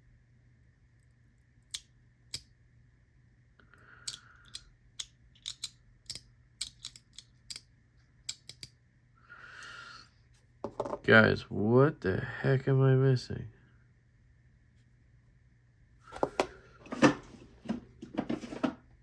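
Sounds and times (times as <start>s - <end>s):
metal fidget toy clicking: 4.0s - 7.6s, 8.3s - 8.7s.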